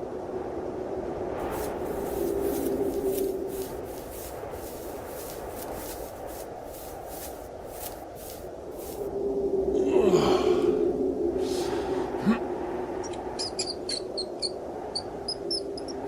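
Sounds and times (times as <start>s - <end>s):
storm wind: 0.0s - 13.4s
footsteps crunching through snow: 1.4s - 9.1s.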